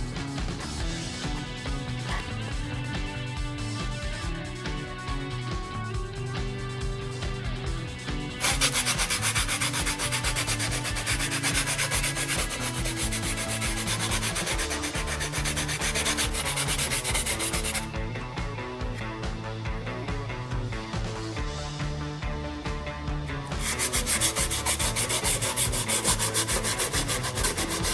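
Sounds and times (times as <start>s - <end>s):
background music: 0.0s - 27.9s
sanding plastic scratching: 8.4s - 17.9s, 23.5s - 27.9s.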